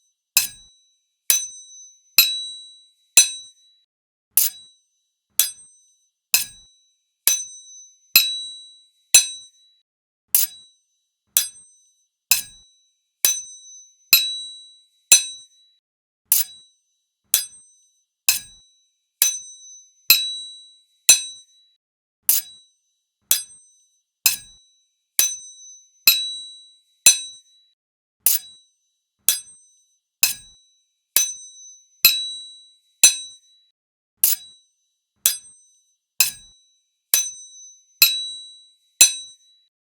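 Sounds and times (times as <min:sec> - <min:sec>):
sword blades clanging: 0:28.3 - 0:28.5, 0:34.2 - 0:34.5.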